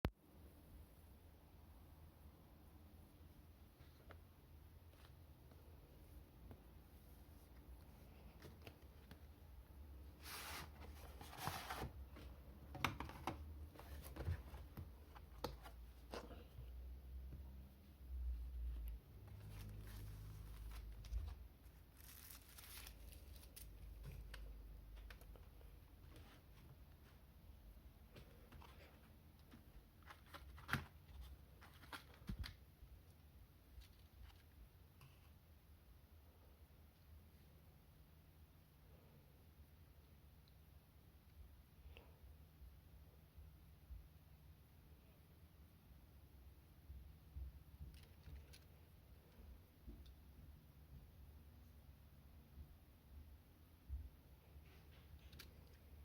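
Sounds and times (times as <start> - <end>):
packaging rustling: 19.5 - 24.4.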